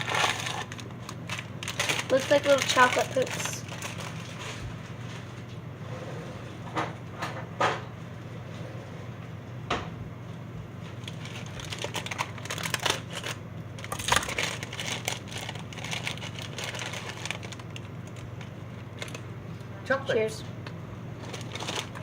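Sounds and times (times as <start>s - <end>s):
crunchy cereal crunching: 0.0s - 4.6s, 11.0s - 19.3s, 21.2s - 22.0s
crisp clicks and rustles: 0.0s - 5.5s, 10.8s - 19.3s, 21.2s - 22.0s.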